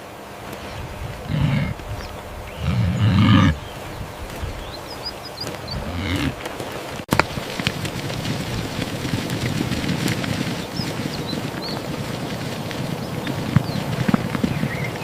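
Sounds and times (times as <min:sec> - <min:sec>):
low animal calls: 0:00.6 - 0:06.8.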